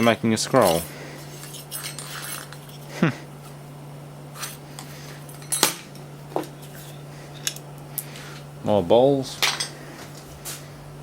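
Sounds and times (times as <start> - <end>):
metal parts clinking: 0.0 - 2.8
steady low hum: 0.0 - 11.0.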